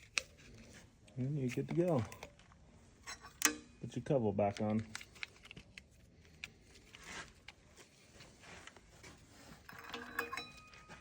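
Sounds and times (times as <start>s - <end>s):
hands handling parts clicking: 4.5s - 7.6s.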